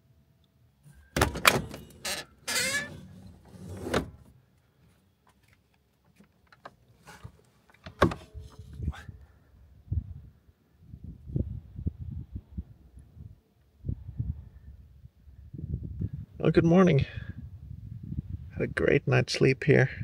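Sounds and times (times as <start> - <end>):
sliding scrape: 1.7 - 4.3
sharp clunks and knocks: 7.2 - 8.4.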